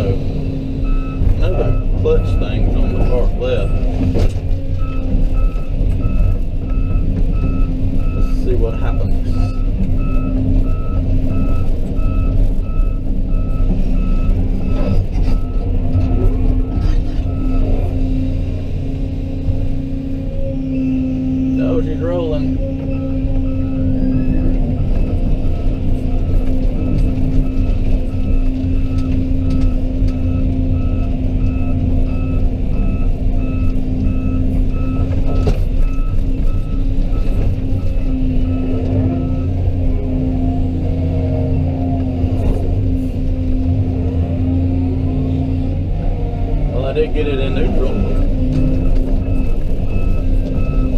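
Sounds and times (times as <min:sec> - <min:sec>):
diesel engine running: 0:00.0 - 0:50.9
backup alarm beeping: 0:22.6 - 0:39.5, 0:47.4 - 0:50.9.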